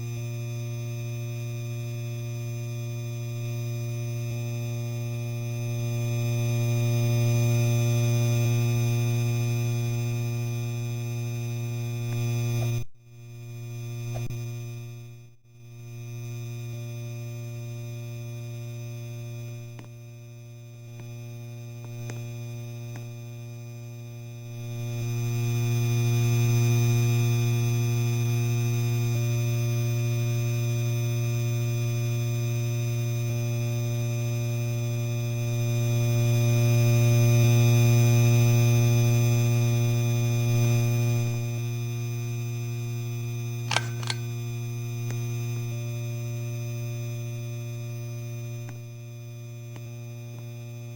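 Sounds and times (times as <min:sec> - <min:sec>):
sharp clicks: 0:43.7 - 0:44.3
electric fan motor humming: 0:43.7 - 0:44.4.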